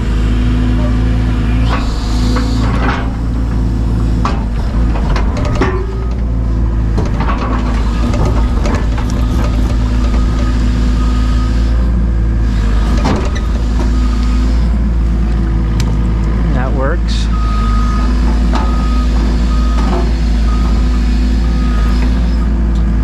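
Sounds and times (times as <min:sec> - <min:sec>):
excavator diesel engine running: 0:00.0 - 0:23.0
rocks knocking against bucket: 0:07.0 - 0:10.8.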